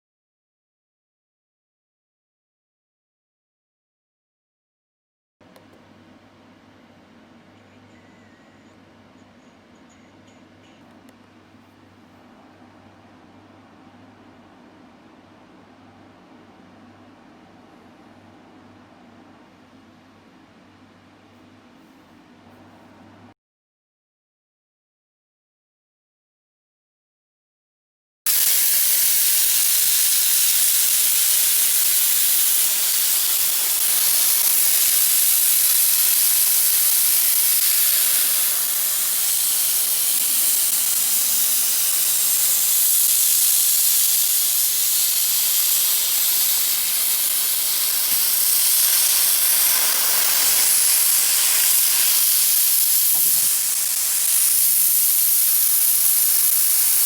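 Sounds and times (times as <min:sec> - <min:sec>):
plasma cutter hissing: 0:28.3 - 0:57.0.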